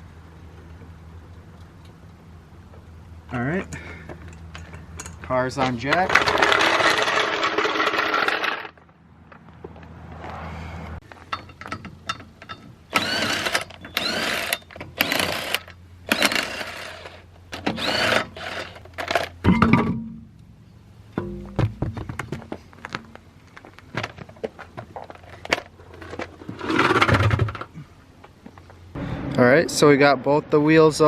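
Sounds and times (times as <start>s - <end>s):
impact wrench bursts: 12.9s - 19.3s.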